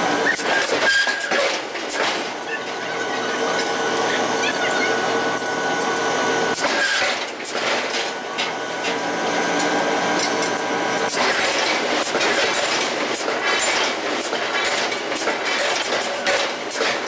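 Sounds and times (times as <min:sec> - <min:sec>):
factory machinery droning: 0:00.0 - 0:17.0
metallic clanks: 0:09.6 - 0:17.0.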